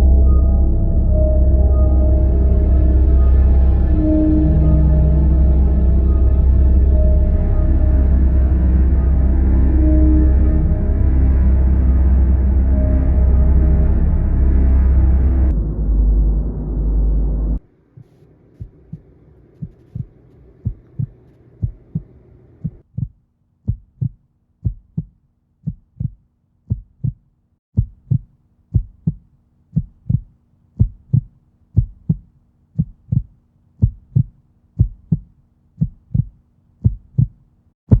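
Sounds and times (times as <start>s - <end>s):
faint steady hum: 0.0s - 22.8s
heartbeat thumps: 18.0s - 27.2s, 27.8s - 38.0s.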